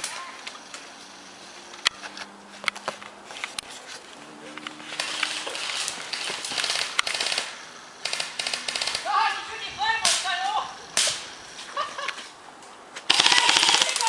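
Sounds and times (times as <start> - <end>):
airsoft gun shots: 11.0 - 11.3, 13.1 - 14.0.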